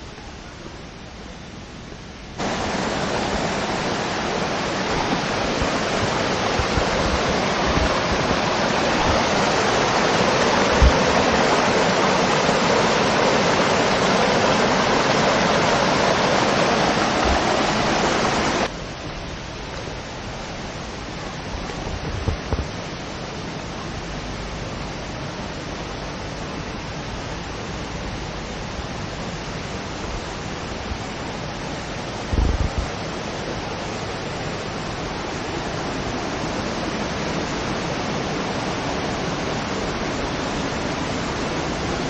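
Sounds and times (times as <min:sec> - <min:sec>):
quiet rushing noise: 0:00.0 - 0:42.0
loud rushing noise: 0:02.4 - 0:18.7.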